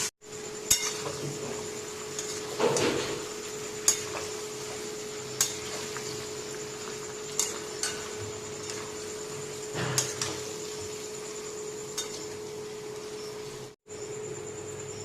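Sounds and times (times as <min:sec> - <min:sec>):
steady hum: 0:00.0 - 0:15.0
utensils knocking on a pot: 0:00.7 - 0:06.2, 0:07.2 - 0:10.7.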